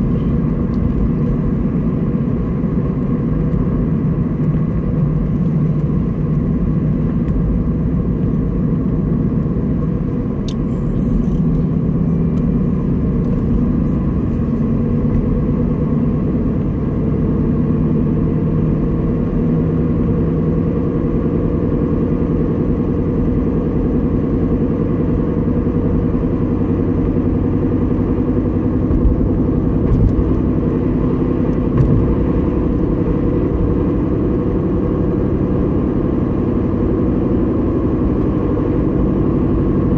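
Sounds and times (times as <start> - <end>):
car engine rumble: 0.0 - 39.9
steady low hum: 18.8 - 39.1.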